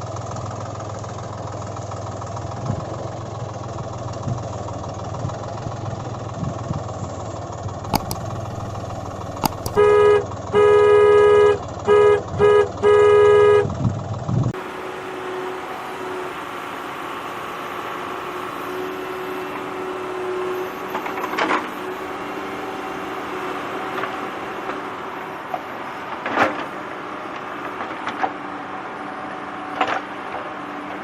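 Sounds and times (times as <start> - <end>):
horn honking: 9.6 - 13.7.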